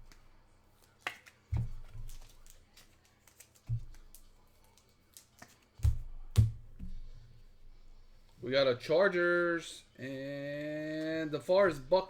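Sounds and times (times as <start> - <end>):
cards clicking and tapping: 0.0 - 7.0
dull thumps: 1.5 - 2.1, 5.8 - 7.2.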